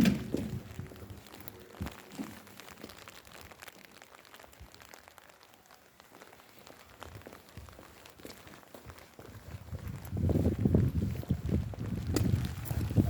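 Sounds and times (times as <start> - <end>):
light rain falling: 0.0 - 13.0
soft footsteps: 6.1 - 13.0.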